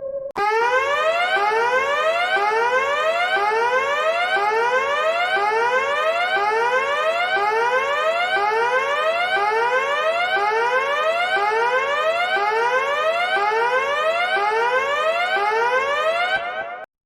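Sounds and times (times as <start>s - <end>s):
electronic alarm siren sweeping upward: 0.0s - 16.9s.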